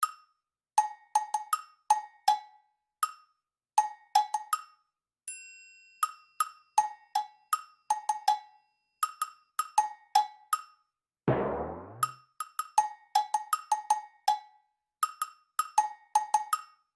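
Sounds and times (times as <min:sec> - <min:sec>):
wood-block percussion knocks: 0:11.3 - 0:12.1.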